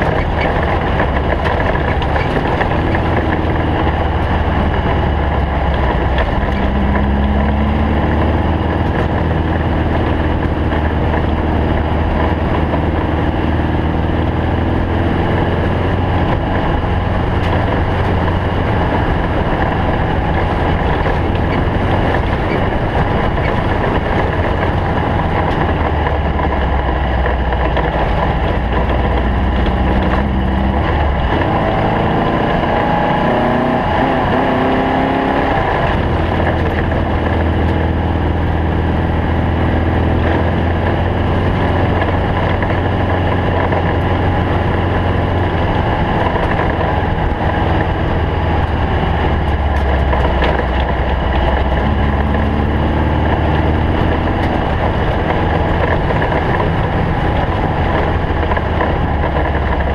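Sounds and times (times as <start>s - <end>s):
race car engine at speed: 0.0s - 59.9s
road and wind noise: 0.0s - 59.9s.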